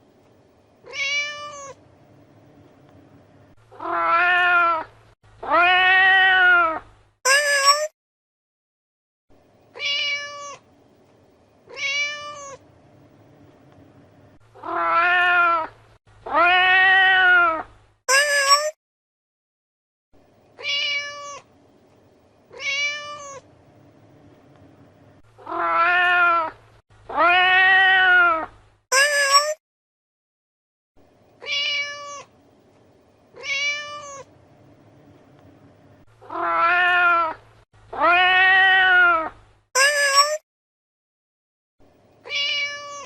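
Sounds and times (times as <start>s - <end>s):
cat meowing: 0.8s - 1.8s, 3.7s - 7.9s, 9.8s - 10.6s, 11.7s - 12.6s, 14.6s - 15.7s, 16.3s - 18.8s, 20.6s - 21.5s, 22.5s - 23.4s, 25.4s - 29.6s, 31.4s - 32.3s, 33.4s - 34.3s, 36.2s - 40.4s, 42.2s - 43.0s.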